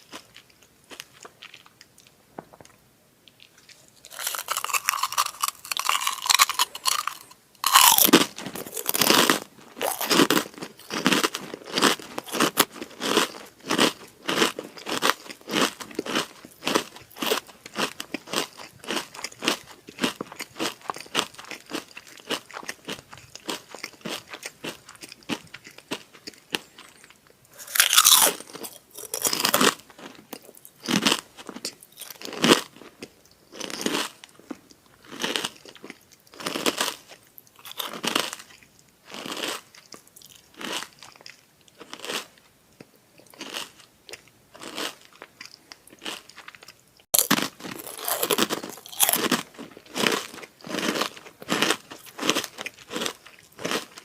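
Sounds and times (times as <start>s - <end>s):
crunchy chewing: 0.0s - 2.6s, 3.2s - 42.4s, 43.2s - 54.0s
crisp cracker bites: 3.7s - 26.6s, 27.5s - 32.8s, 33.5s - 41.2s, 47.1s - 54.0s.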